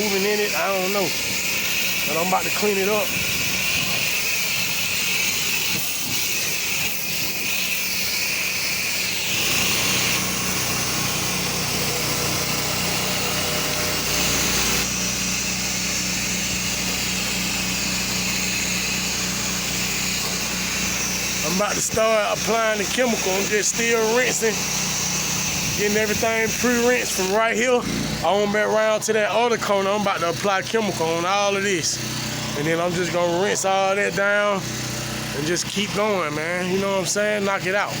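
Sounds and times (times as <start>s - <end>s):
water spray hissing: 0.0s - 27.4s
pressure washer engine hum: 0.0s - 38.0s.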